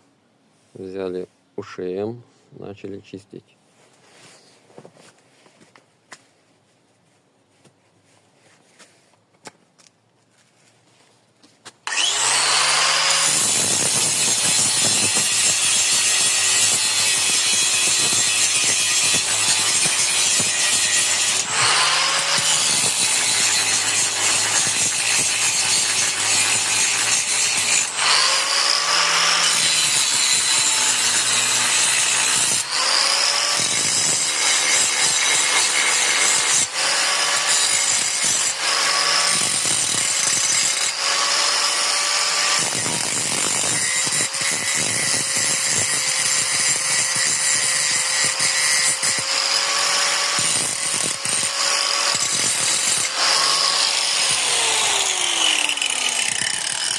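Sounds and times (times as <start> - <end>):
angle grinder grinding metal: 11.9 - 56.9.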